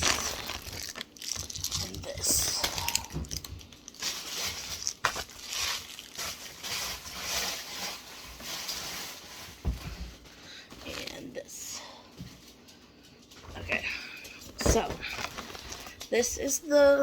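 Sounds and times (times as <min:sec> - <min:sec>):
plastic packaging crinkling: 0:00.0 - 0:11.4, 0:14.2 - 0:16.5.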